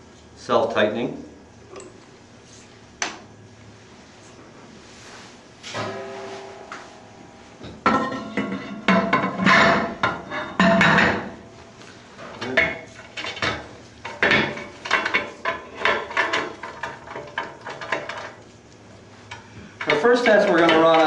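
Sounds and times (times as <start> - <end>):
metallic scrapes: 4.9 - 8.8
metal parts knocking and clanking: 12.3 - 18.4, 19.8 - 21.0.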